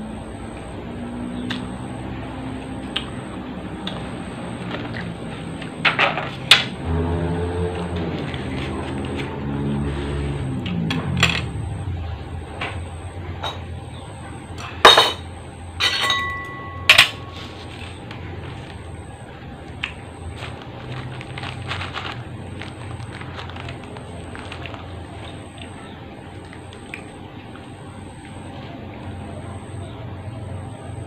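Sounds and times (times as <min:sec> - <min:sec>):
cutlery clinking against dishes: 0:15.8 - 0:17.3.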